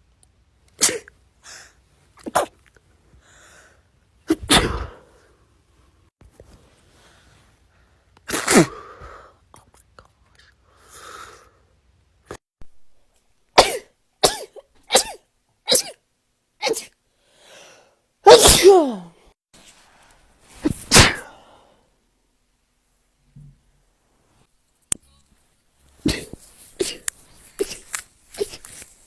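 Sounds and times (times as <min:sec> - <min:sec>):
person sneezing: 0:00.8 - 0:01.1, 0:04.3 - 0:05.1, 0:08.3 - 0:08.9, 0:13.6 - 0:16.0, 0:16.6 - 0:16.9, 0:18.3 - 0:19.2, 0:20.6 - 0:21.4, 0:26.0 - 0:28.8.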